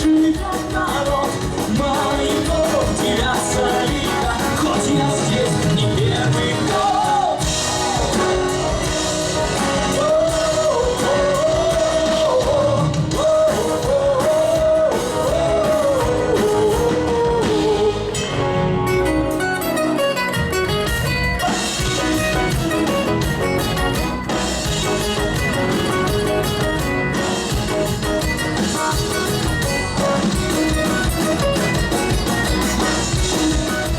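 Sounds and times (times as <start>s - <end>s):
person singing lead vocals: 0.0s - 18.8s, 28.6s - 33.9s
heavy rock band playing: 0.0s - 33.9s.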